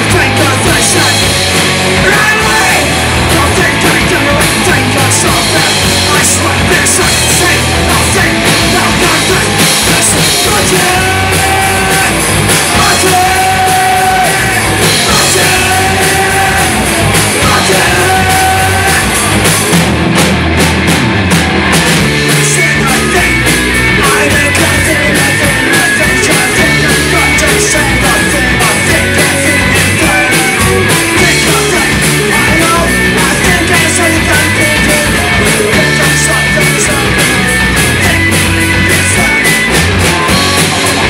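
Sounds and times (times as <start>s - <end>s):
shouted vocals: 0.0s - 19.4s
punk rock band playing live: 0.0s - 41.0s.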